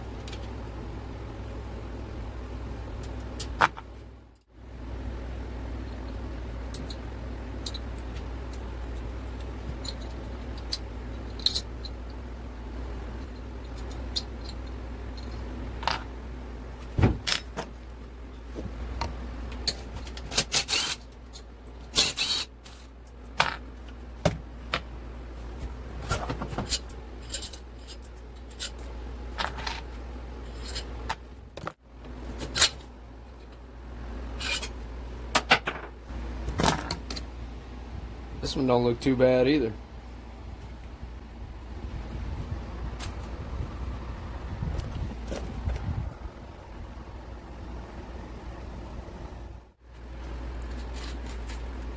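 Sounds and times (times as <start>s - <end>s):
steady low hum: 0.0s - 51.9s
metal tools clinking and scraping: 8.5s - 12.1s, 19.5s - 24.0s, 26.0s - 31.2s, 34.3s - 34.8s.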